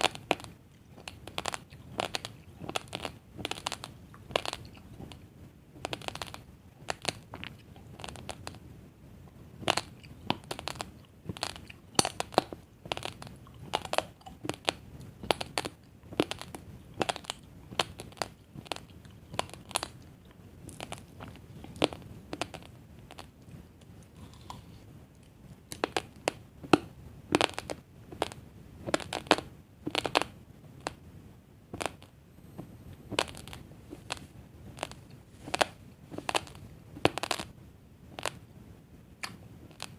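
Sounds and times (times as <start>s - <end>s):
chewing crunchy rice grains: 0.0s - 5.2s, 5.8s - 8.6s, 9.6s - 31.0s, 31.8s - 37.5s.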